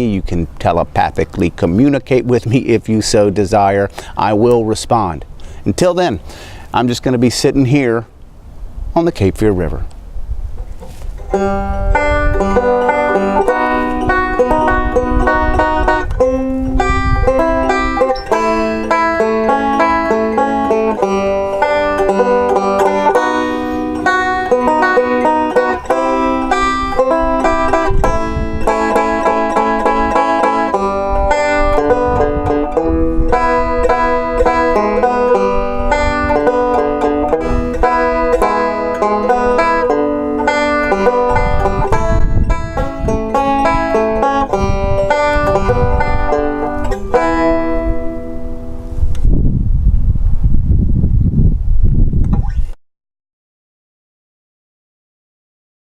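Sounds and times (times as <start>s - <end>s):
banjo-led bluegrass music: 10.9s - 48.6s.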